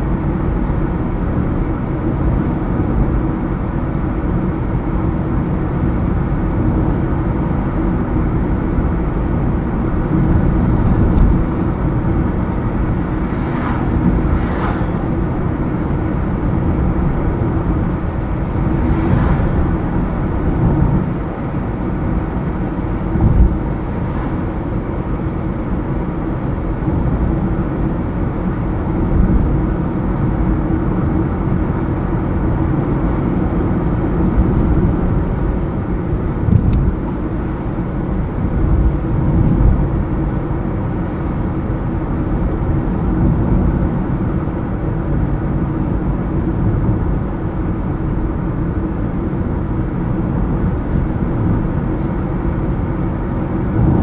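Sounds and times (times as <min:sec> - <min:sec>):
car engine and tyre road noise: 0:00.0 - 0:54.0
passing vehicles: 0:00.0 - 0:54.0
car bumps: 0:23.0 - 0:25.1, 0:53.5 - 0:54.0.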